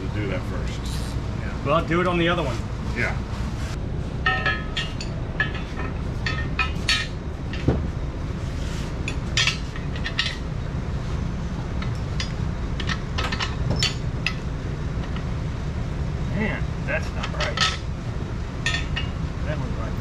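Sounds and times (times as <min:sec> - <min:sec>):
steady low hum: 0:00.0 - 0:20.0
metal bolts and nuts clinking: 0:04.2 - 0:07.9, 0:09.0 - 0:10.5, 0:11.8 - 0:15.3, 0:17.0 - 0:17.9, 0:18.6 - 0:19.2.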